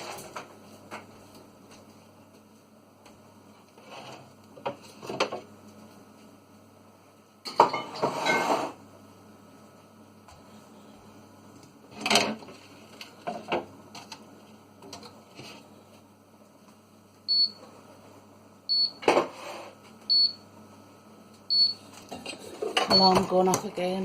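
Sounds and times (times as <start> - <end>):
fridge alarm beeping: 17.3 - 17.6, 18.7 - 19.0, 20.1 - 20.5, 21.5 - 21.8, 22.8 - 23.4.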